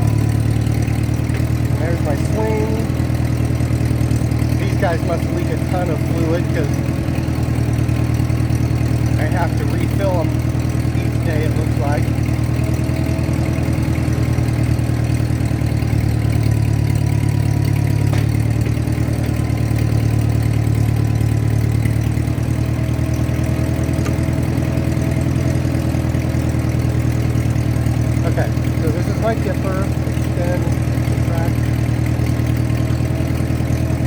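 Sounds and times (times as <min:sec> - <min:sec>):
tractor engine running: 0:00.0 - 0:34.0.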